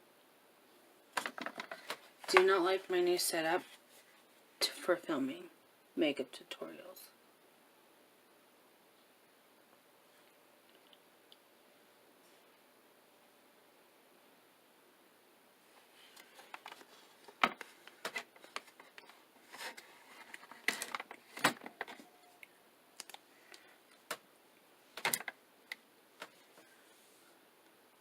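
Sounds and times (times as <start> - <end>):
plastic items clicking and tapping: 1.2 - 2.5, 16.2 - 22.0, 25.0 - 26.4.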